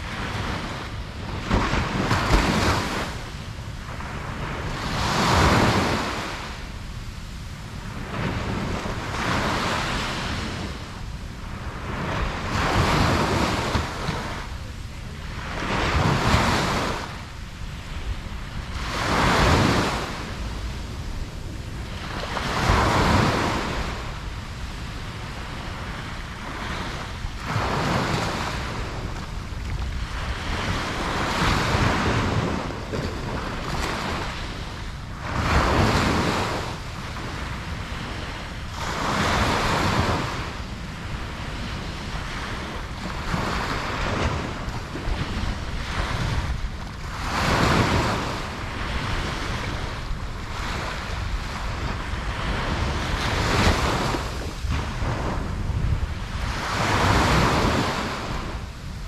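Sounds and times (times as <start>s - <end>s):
ocean waves breaking: 0.0s - 59.0s
wind noise on microphone: 0.0s - 59.0s.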